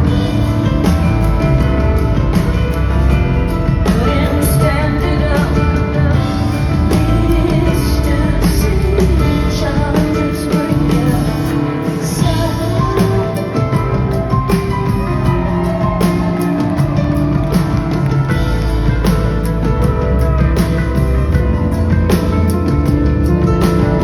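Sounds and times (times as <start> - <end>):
rock band playing live: 0.0 - 24.0
woman singing: 3.8 - 14.2.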